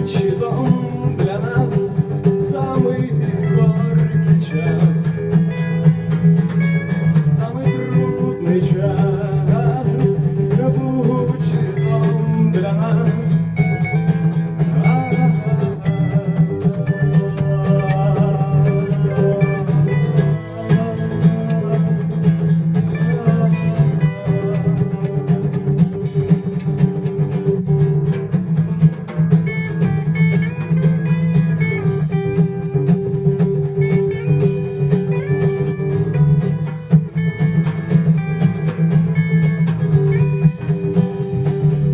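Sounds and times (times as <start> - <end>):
person singing: 0.0 - 26.1
guitar: 0.0 - 41.9
low bass notes: 0.0 - 41.9
percussive beat: 0.0 - 41.9.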